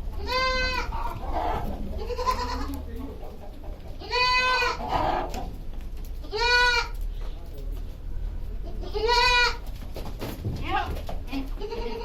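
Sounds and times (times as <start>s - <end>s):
goats bleating: 0.1s - 2.9s, 4.0s - 5.4s, 6.2s - 7.0s, 8.6s - 9.6s, 10.7s - 12.0s.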